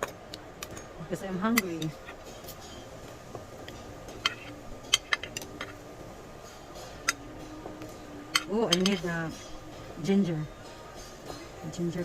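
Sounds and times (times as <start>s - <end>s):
restaurant background noise: 0.0s - 12.0s
cutlery clinking on dishes: 3.6s - 5.8s, 8.3s - 9.6s.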